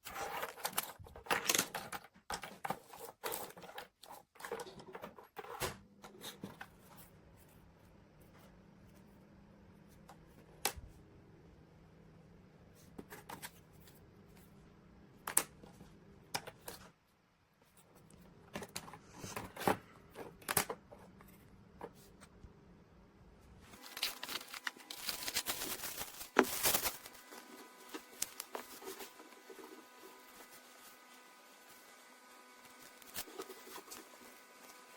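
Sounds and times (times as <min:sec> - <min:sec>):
crackling and rustling: 0:23.6 - 0:31.2.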